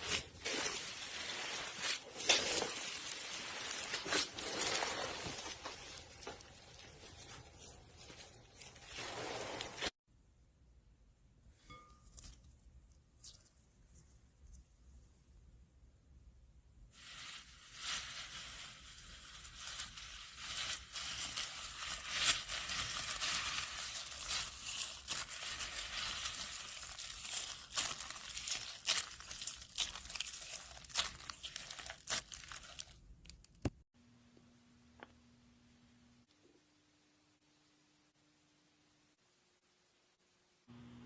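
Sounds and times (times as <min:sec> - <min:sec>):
slime crackling and popping: 0:22.2 - 0:33.7.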